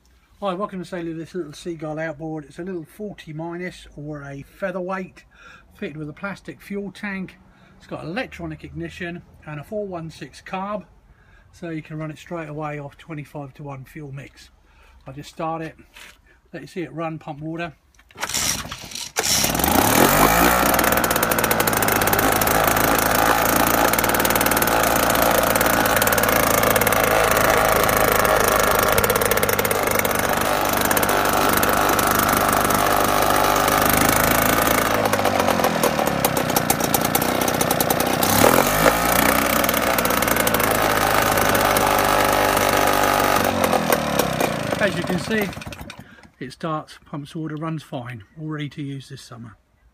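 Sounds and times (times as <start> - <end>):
outboard motor running: 18.2 - 46.2.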